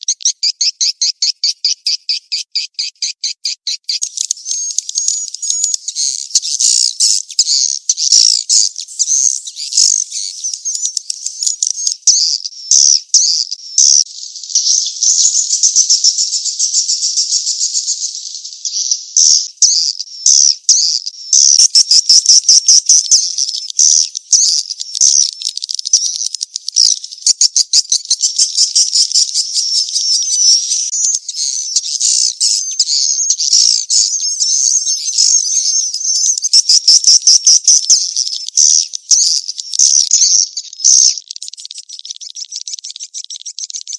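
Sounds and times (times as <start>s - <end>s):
swiftlets twittering and clicking: 36.3s - 43.9s.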